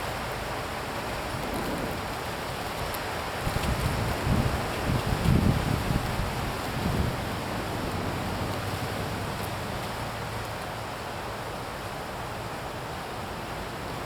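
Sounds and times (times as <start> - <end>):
wind buffeting microphone: 1.0 - 9.8.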